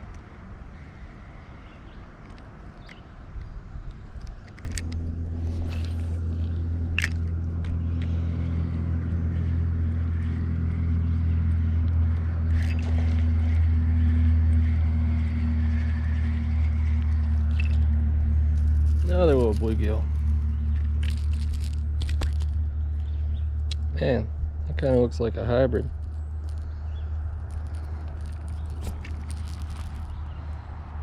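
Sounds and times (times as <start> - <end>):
motor humming: 4.2 - 24.7.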